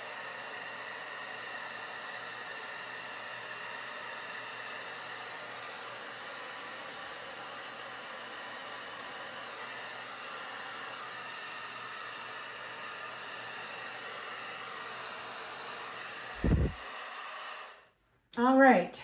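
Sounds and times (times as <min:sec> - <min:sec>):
hair dryer blowing: 0:00.0 - 0:17.9
loud low thump: 0:16.4 - 0:16.8.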